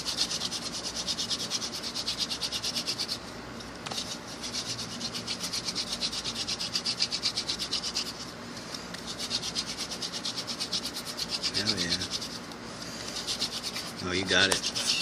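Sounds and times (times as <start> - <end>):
wooden spindle scraping rhythmically: 8.9 - 15.0.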